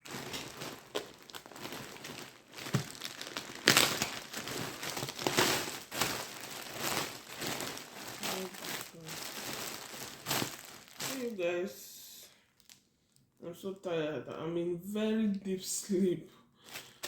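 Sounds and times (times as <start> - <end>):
rustling and crinkling: 0.0 - 11.5, 12.5 - 13.4, 16.6 - 17.0.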